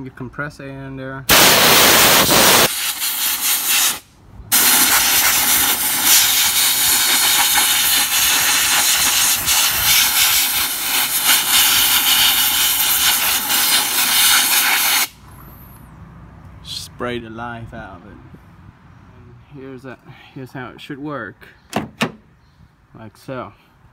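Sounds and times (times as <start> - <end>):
air blow gun hissing: 1.3 - 15.2.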